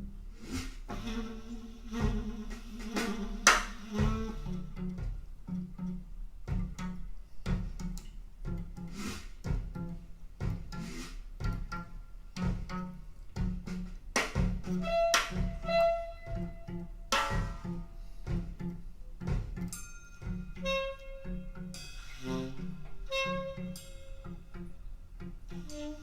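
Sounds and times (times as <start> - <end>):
plucked double bass: 0.0 - 26.0
saxophone long notes: 0.9 - 5.1, 14.6 - 18.8, 20.2 - 26.0
drum and cymbal strikes: 1.8 - 5.4, 6.5 - 24.7.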